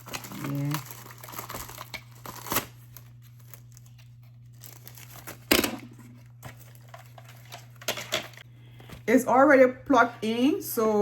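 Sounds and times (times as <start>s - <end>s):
packaging tearing and crinkling: 0.0s - 8.4s.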